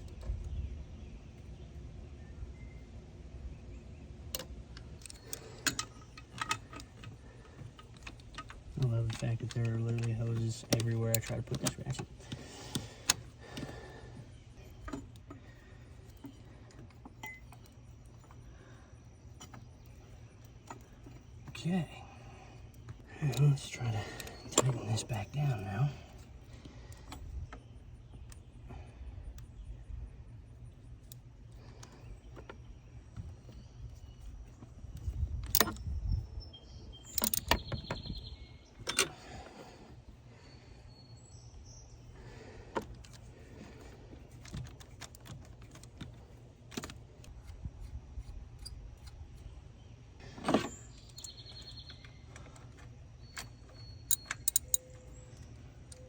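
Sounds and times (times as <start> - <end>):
low steady hum: 0.0 - 56.0
ratchet clinking on metal: 53.2 - 56.0
ratchet clicking metallically: 54.1 - 55.0.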